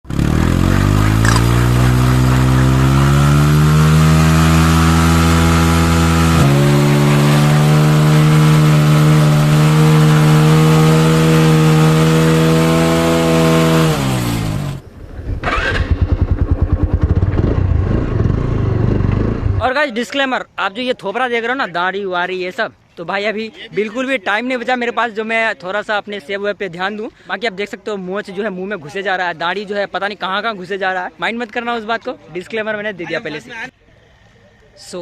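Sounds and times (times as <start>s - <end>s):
motorcycle engine revving: 0.0s - 19.6s.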